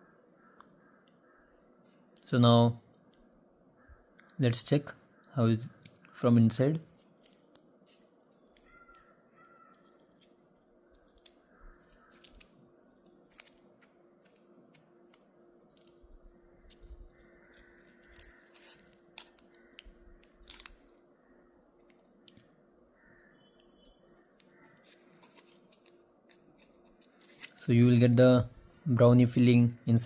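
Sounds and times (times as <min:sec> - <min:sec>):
foil crinkling and clicks: 0:09.6 - 0:21.0, 0:23.2 - 0:27.6.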